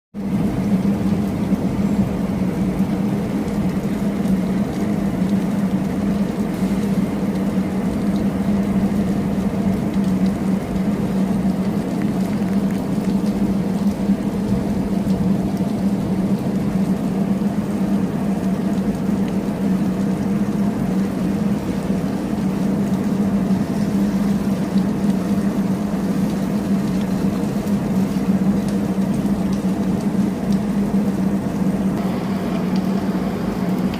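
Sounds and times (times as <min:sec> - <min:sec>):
rain: 0:00.2 - 0:33.9
low hum: 0:28.4 - 0:33.9.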